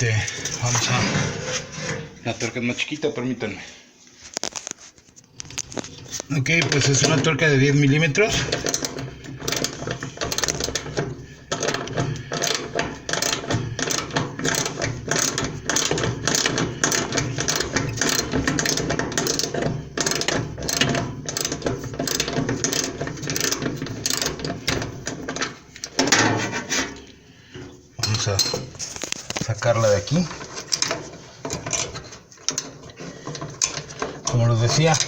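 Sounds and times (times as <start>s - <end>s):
ratchet wrench clicking rapidly: 8.5s - 24.3s.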